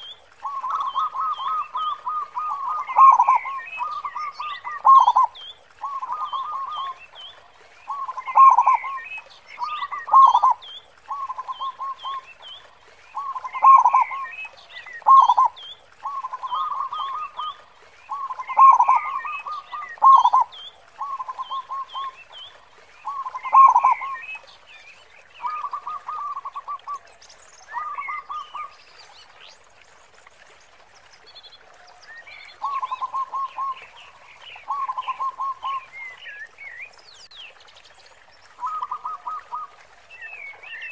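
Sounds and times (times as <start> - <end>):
dove cooing: 0.4 - 7.0, 7.9 - 9.0, 18.1 - 22.1, 23.1 - 24.2.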